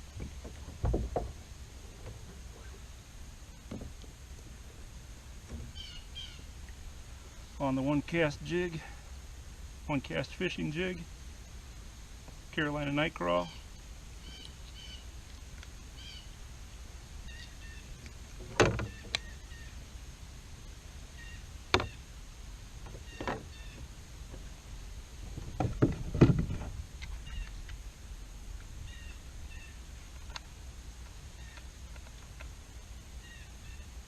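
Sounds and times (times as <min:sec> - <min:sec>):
low steady rumble: 0:00.0 - 0:34.0
small birds chirping: 0:05.6 - 0:06.8, 0:13.4 - 0:16.4, 0:17.1 - 0:19.9, 0:21.1 - 0:22.2, 0:22.9 - 0:24.0, 0:27.0 - 0:27.8, 0:28.6 - 0:30.5, 0:33.1 - 0:34.0
gear knocking against kayak: 0:25.3 - 0:26.8.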